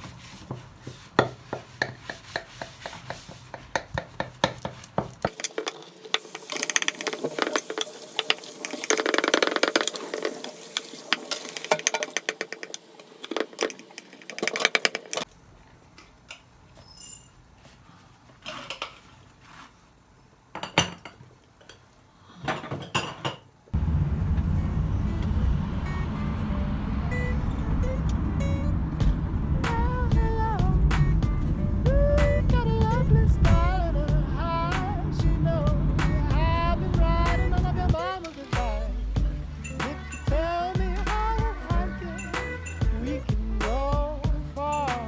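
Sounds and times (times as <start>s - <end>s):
dishes and cutlery clinking: 20.6s - 23.5s.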